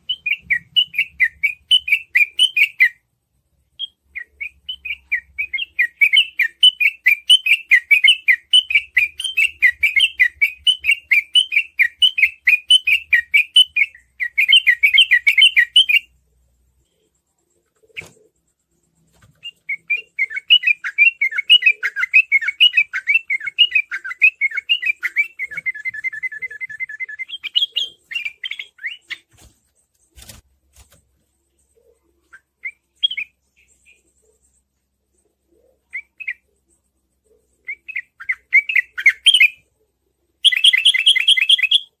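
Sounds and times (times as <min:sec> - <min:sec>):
bird singing chattering phrases: 0:19.4 - 0:29.3.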